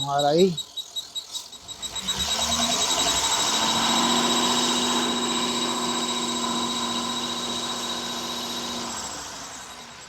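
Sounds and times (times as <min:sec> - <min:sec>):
engine running at steady revs: 0:01.3 - 0:09.8.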